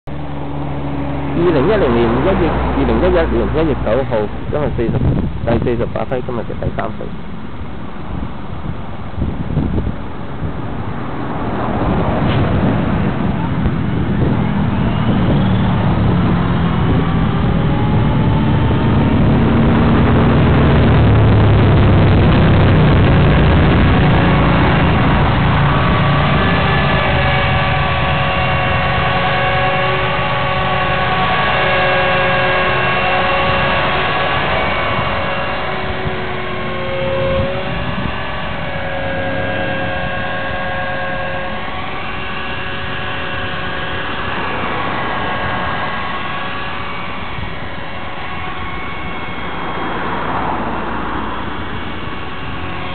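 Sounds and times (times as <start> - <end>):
wind rumble on microphone: 0.0 - 52.9
model helicopter engine and rotor whine: 0.1 - 52.9.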